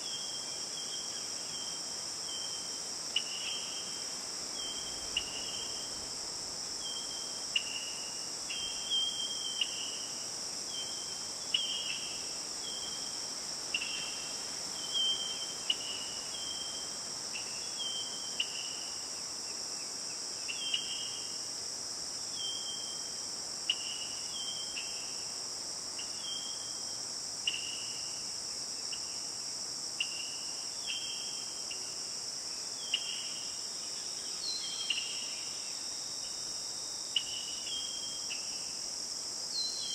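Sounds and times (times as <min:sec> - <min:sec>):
crickets chorus: 0:00.0 - 0:39.9.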